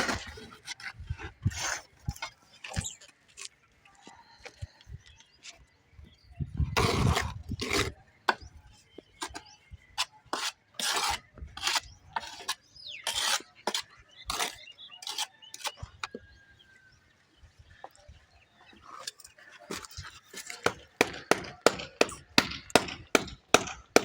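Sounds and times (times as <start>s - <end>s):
tiling tools scraping mortar: 0.0s - 3.0s, 6.6s - 8.4s, 9.2s - 16.2s.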